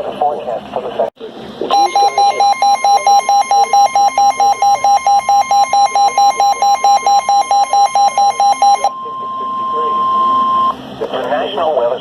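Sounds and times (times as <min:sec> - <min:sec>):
rapid electronic beeping: 0:01.7 - 0:10.8
steady high alarm tone: 0:01.7 - 0:10.8.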